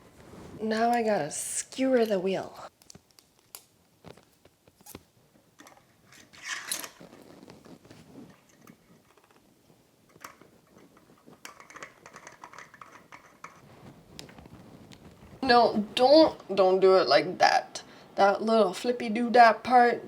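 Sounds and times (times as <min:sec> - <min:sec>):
metallic clicks and scraping: 0:05.6 - 0:09.4, 0:10.1 - 0:13.6.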